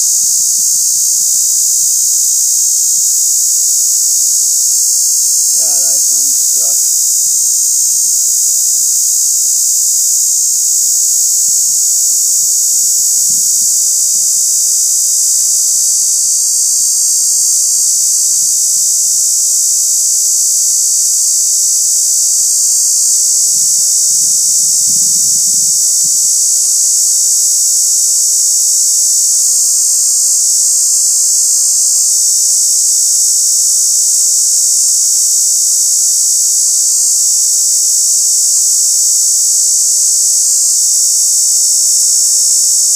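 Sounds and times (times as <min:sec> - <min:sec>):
cicada buzzing: 0:00.0 - 0:42.9.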